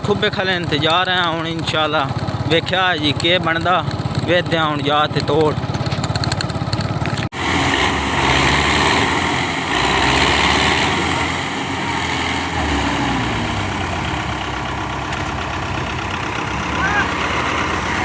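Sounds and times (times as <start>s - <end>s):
vehicle engine running: 0.0s - 18.0s.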